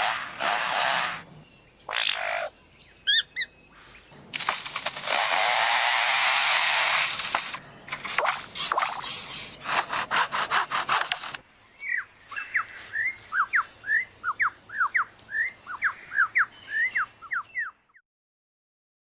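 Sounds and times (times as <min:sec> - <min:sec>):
lyrebird rasping like a chainsaw: 0:00.0 - 0:02.5, 0:04.4 - 0:11.4.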